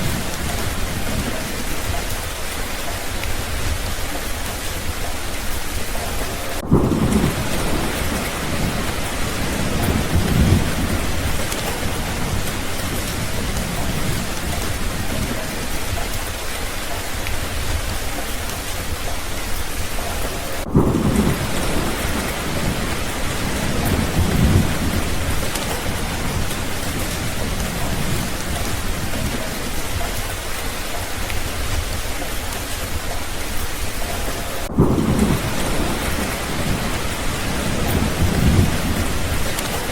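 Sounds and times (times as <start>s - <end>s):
rolling thunder: 0.0s - 39.9s
steady rain: 0.0s - 39.9s.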